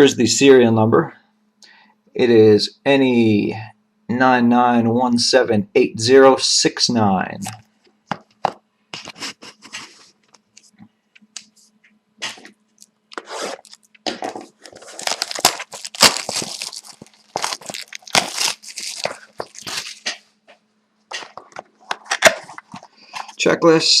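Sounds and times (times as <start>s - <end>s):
wrapper crinkling and rustling: 12.3s - 20.2s.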